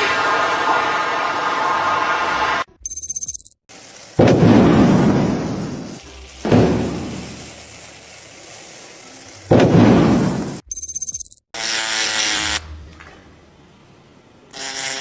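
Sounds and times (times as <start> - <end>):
loud thunder-like booms: 4.2 - 5.9, 9.5 - 10.6.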